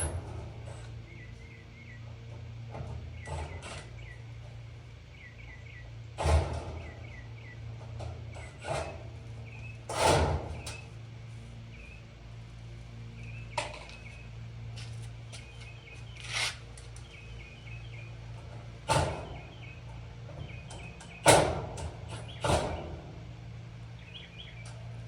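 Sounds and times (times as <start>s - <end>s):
steady low hum: 0.0s - 25.0s
small birds chirping: 1.0s - 6.1s, 6.8s - 9.9s, 11.6s - 12.2s, 13.1s - 21.3s, 23.9s - 25.0s
metal clanks and scrapes: 7.8s - 9.2s, 9.8s - 10.9s, 16.1s - 16.6s.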